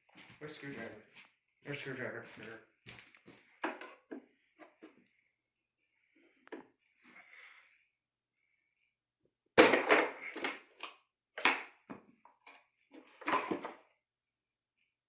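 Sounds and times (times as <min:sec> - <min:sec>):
hard plastic and tools clattering: 0:03.5 - 0:04.8, 0:09.6 - 0:13.9.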